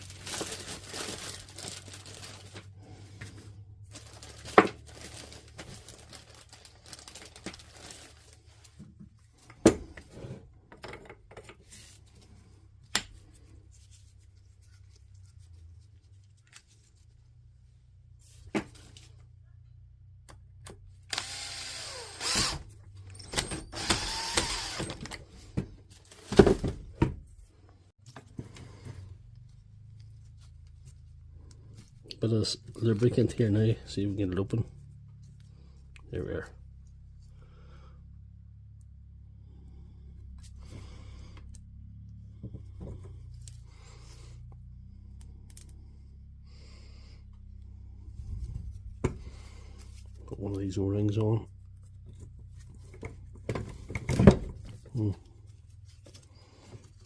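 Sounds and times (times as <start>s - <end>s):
low steady hum: 27.2s - 57.0s.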